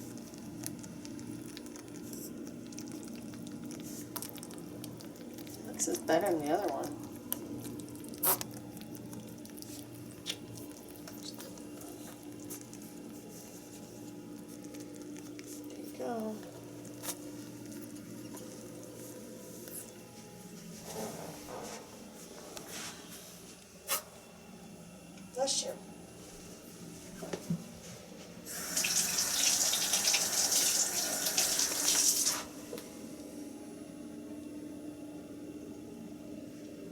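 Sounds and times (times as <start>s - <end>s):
rabbit licking liquid: 0.0s - 20.0s, 28.5s - 32.5s.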